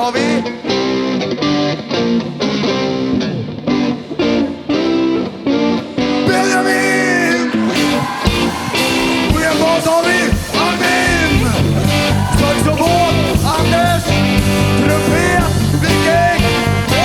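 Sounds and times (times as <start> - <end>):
electric guitar: 0.0 - 17.0
voices singing: 6.3 - 17.0
jazz band playing: 7.7 - 17.0.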